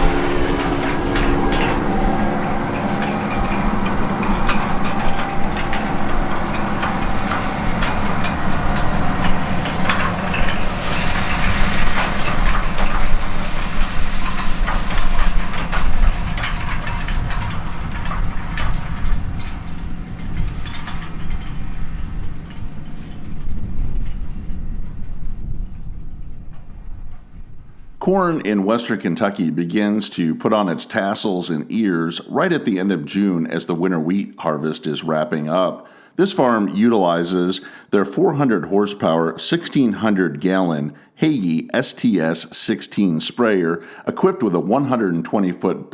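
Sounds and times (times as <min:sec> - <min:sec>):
diesel engine running: 0:00.0 - 0:26.8
machinery clattering: 0:00.0 - 0:28.9.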